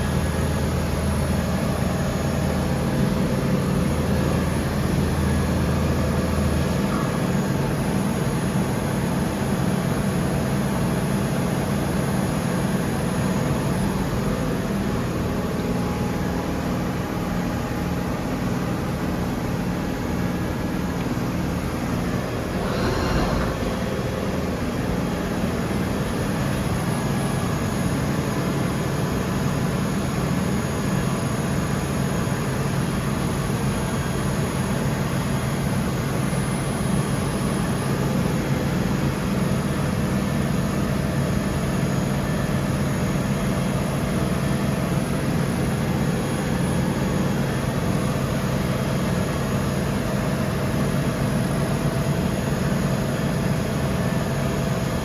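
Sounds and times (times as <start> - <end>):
machining centre humming: 21.6 - 29.4
faint high tones: 22.5 - 24.2.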